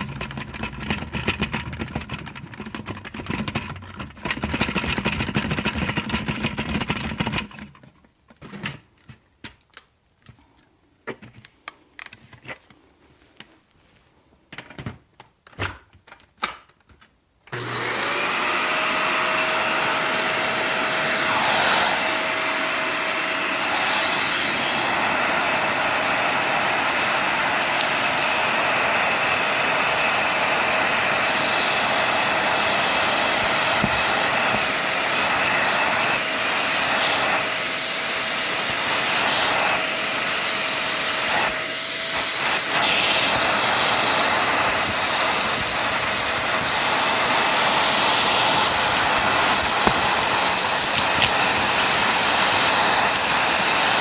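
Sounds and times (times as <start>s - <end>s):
vacuum cleaner running on rug: 17.5s - 54.0s.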